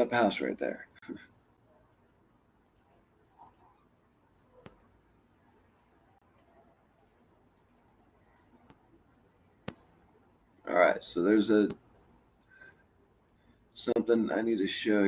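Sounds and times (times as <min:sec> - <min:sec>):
computer mouse clicks: 0:02.5 - 0:04.9, 0:05.7 - 0:08.9, 0:09.6 - 0:10.0.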